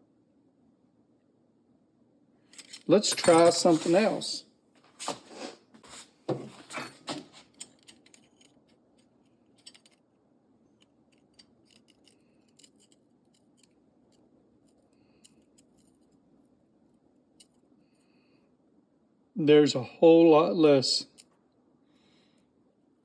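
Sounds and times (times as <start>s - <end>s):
steel wrenches clinking: 2.5s - 4.2s
metal clicks and scrapes: 7.5s - 10.0s, 10.8s - 16.1s.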